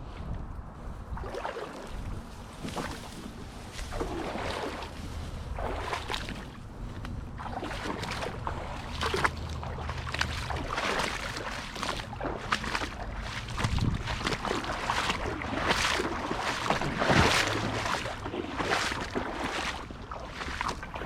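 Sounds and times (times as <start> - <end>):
water sloshing as someone wades: 0.0 - 21.0
splashy clicks: 5.6 - 21.0.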